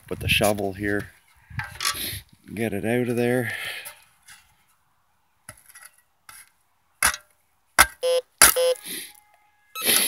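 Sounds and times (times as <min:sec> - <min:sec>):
metal shovel striking frozen soil: 0:05.5 - 0:09.0, 0:09.8 - 0:10.0
short electronic beeps: 0:08.0 - 0:08.9, 0:09.8 - 0:10.0.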